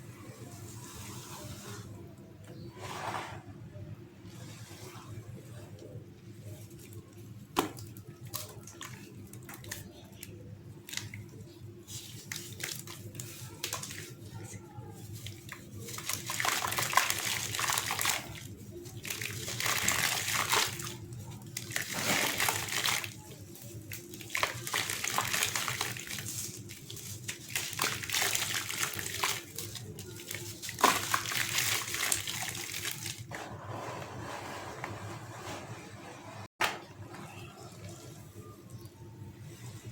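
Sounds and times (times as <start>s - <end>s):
cement lumps crumbling in water: 15.3s - 33.3s
sand and cement crumbling in water: 21.6s - 23.2s.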